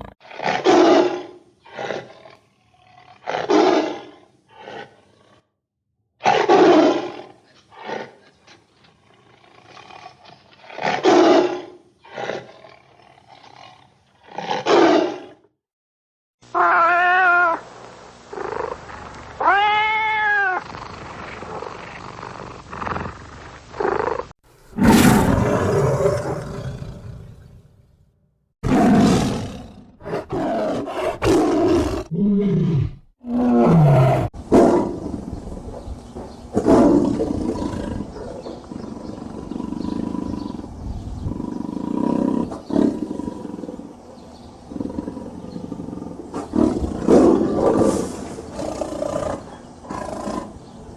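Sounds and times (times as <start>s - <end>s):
tigers roaring and growling: 23.8s - 27.8s, 28.6s - 35.3s, 44.7s - 50.6s.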